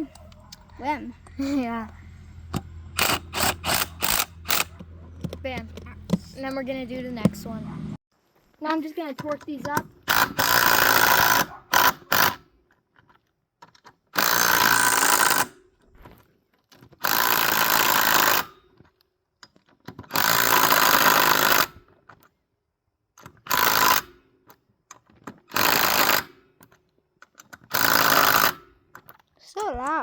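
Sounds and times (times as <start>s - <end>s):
impact wrench bursts: 2.4s - 4.8s, 9.8s - 12.5s, 14.2s - 15.6s, 17.0s - 18.6s, 20.1s - 21.8s, 23.4s - 24.2s, 25.5s - 26.5s, 27.7s - 28.8s.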